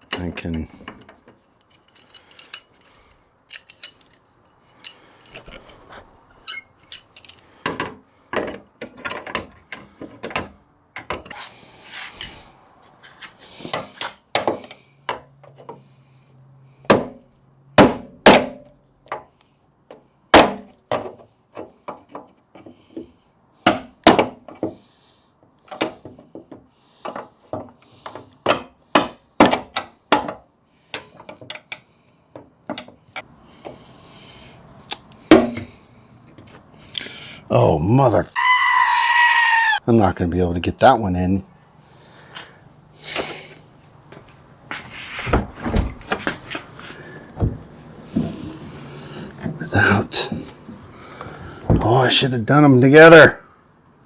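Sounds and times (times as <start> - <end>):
sledgehammer striking metal hinge: 17.8 - 18.7, 35.3 - 35.7.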